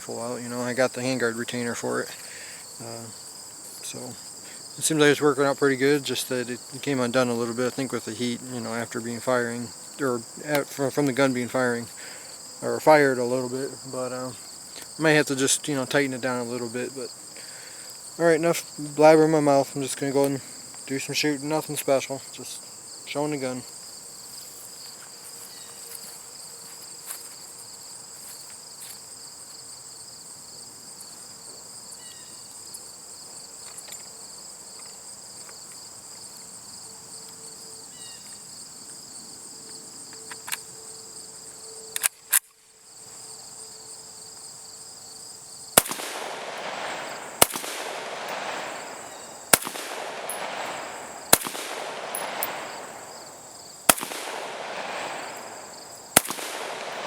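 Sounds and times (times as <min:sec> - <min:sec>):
insects chirring: 0:00.0 - 0:57.0
rifle shots echoing: 0:45.8 - 0:57.0
sharp clicks: 0:45.8 - 0:57.0.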